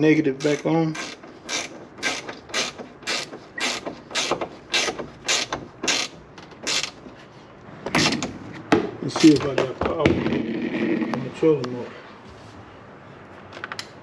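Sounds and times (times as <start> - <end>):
ratchet wrench clicking: 0.4 - 7.0.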